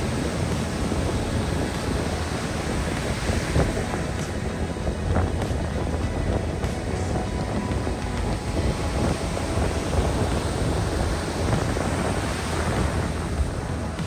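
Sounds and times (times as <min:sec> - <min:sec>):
surf breaking on beach: 0:00.0 - 0:14.0
wind buffeting microphone: 0:00.0 - 0:14.0.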